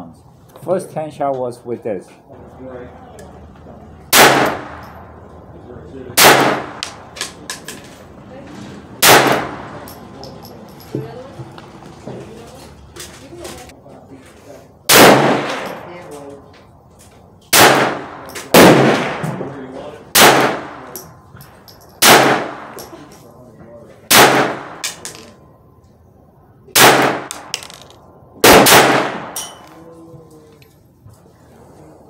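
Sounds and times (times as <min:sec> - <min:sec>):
pistol shots: 0:04.1 - 0:05.0, 0:06.2 - 0:07.5, 0:09.0 - 0:09.8, 0:14.9 - 0:15.9, 0:17.5 - 0:19.4, 0:20.1 - 0:21.0, 0:22.0 - 0:22.9, 0:24.1 - 0:25.3, 0:26.7 - 0:27.7, 0:28.4 - 0:29.6.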